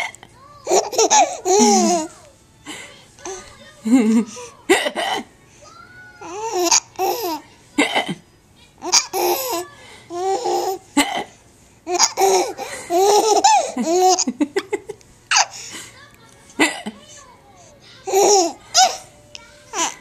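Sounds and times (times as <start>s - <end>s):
young child laughing: 0.8s - 2.1s.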